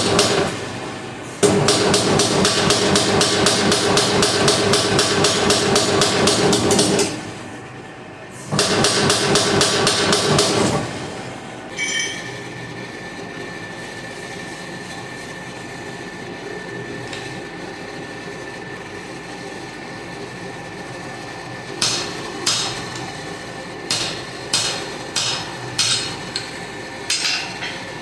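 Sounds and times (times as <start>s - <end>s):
hammer striking steel on anvil: 21.8s - 23.1s, 23.9s - 27.8s.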